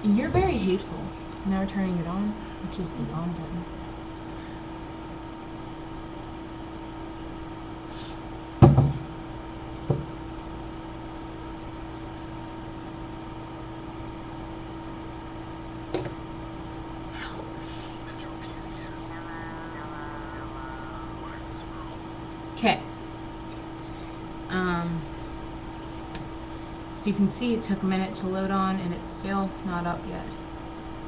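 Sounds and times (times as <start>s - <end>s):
low electrical hum: 0.0s - 31.0s
sharp knocks: 8.6s - 9.0s.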